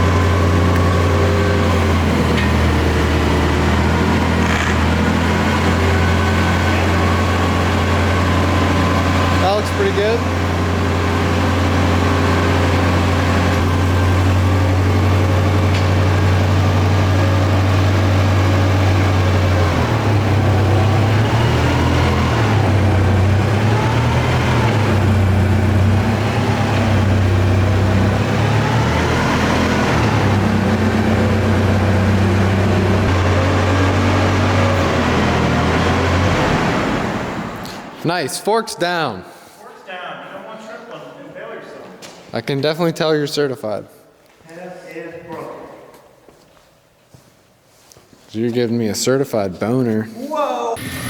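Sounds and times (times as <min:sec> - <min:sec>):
engine whine: 0:00.0 - 0:38.0, 0:50.8 - 0:51.0
forklift engine running: 0:00.0 - 0:38.0, 0:50.8 - 0:51.0.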